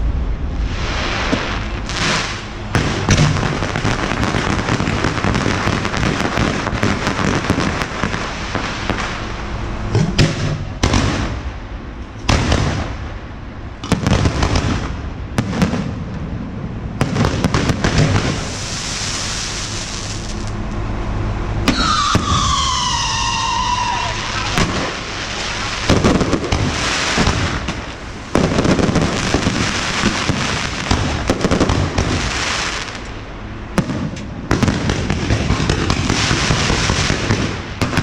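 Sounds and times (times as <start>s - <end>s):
fireworks bangs: 0.0s - 20.6s, 21.6s - 38.0s
fireworks crackling: 0.0s - 20.9s, 21.6s - 38.0s
falling firework whistles: 17.6s - 20.6s, 21.6s - 33.0s.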